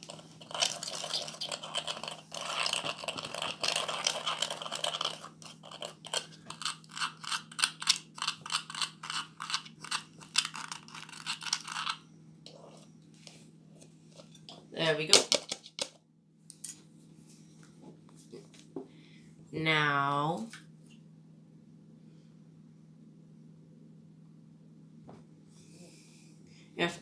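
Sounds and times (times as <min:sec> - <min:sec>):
utensil scraping through powder: 0:00.0 - 0:12.8.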